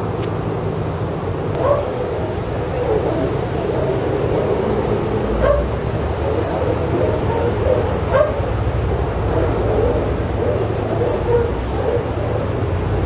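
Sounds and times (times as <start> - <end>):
dogs barking and yipping: 1.5 - 12.8
sharp dog yelps: 1.6 - 2.0, 5.4 - 8.5, 9.3 - 12.1.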